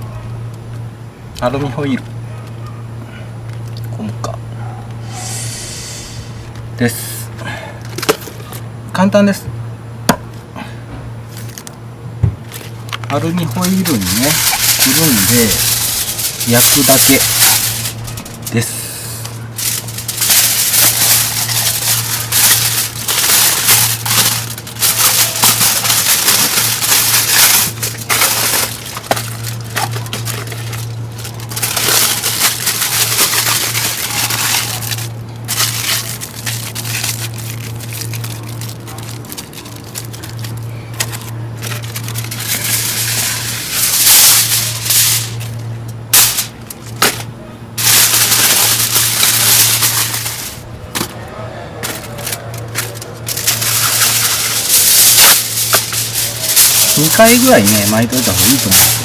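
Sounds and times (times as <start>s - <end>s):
aluminium foil crinkling: 12.4s - 51.2s, 51.8s - 59.0s.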